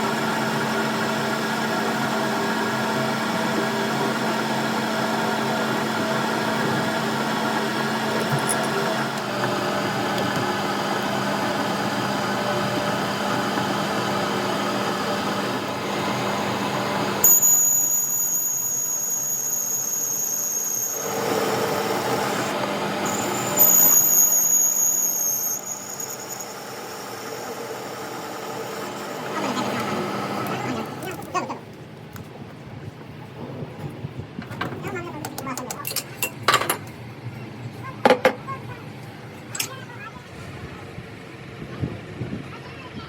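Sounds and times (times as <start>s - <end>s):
mechanical hum: 0.0s - 43.0s
high-pitched squeals: 17.2s - 27.4s.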